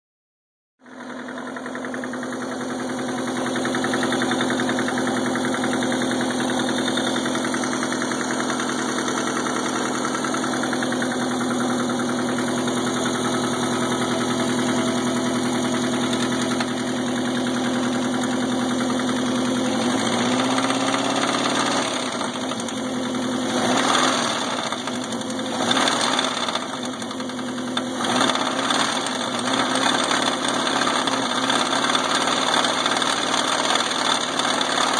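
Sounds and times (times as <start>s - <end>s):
car engine running: 0.8s - 34.9s.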